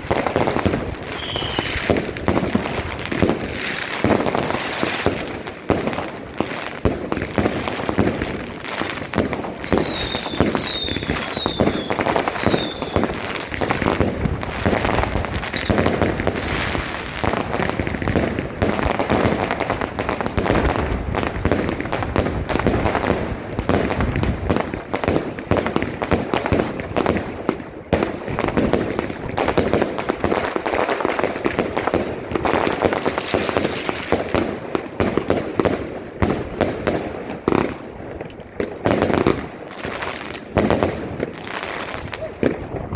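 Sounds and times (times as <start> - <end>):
fireworks bangs and crackles: 0.0 - 42.9
falling firework whistles: 1.1 - 2.0, 9.6 - 14.0, 14.6 - 17.3.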